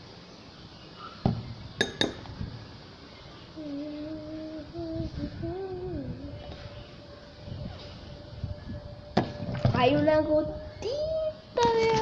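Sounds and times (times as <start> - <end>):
girl humming: 3.6 - 12.0.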